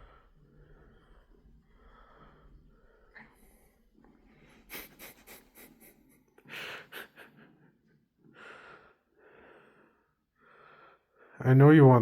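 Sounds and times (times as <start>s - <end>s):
soft breathy puffs: 0.0s - 7.7s.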